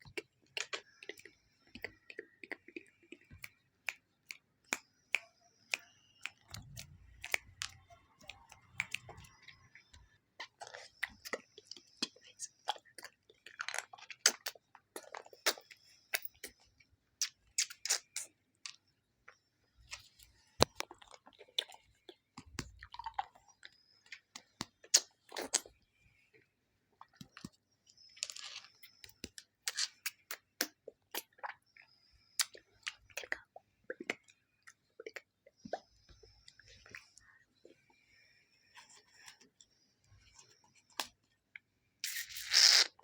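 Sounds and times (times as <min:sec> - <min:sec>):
wet mouth clicks and smacks: 0:00.1 - 0:09.6, 0:10.4 - 0:16.6, 0:17.2 - 0:18.8, 0:24.0 - 0:25.7, 0:28.4 - 0:37.3, 0:42.0 - 0:43.0.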